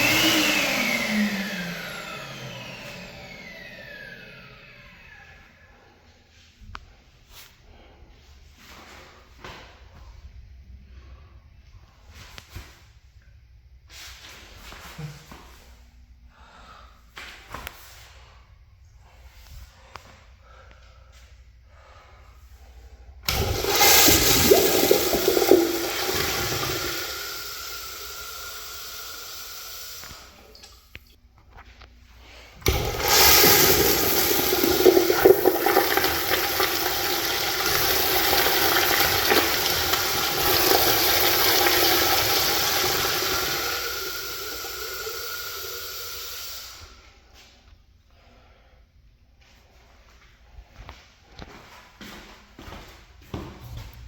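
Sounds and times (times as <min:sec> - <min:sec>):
toilet flushing: 0:00.0 - 0:05.6, 0:23.3 - 0:30.7, 0:32.6 - 0:46.9.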